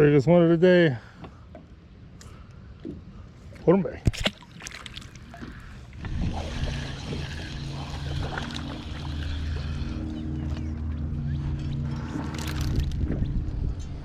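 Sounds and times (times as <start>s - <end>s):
boat motor running: 5.4s - 14.0s.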